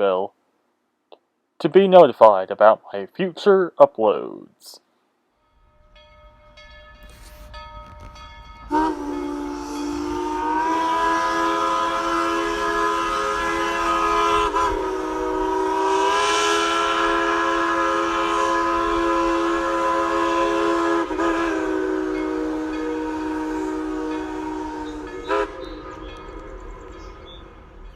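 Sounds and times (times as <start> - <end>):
locomotive air horn chord: 7.0 - 27.2.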